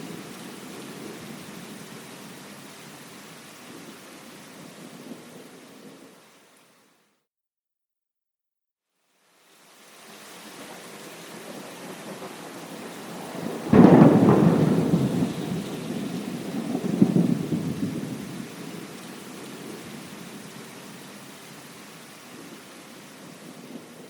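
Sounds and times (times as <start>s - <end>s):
steady rain: 0.0s - 7.2s, 8.9s - 24.0s
thunderclap rolling into rumble: 11.7s - 18.6s.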